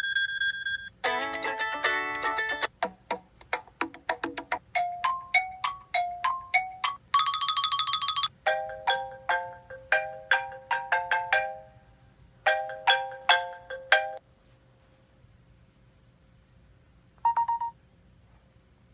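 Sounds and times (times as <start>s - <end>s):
phone ringtone melody: 4.8s - 11.8s, 12.5s - 14.2s, 17.2s - 17.8s.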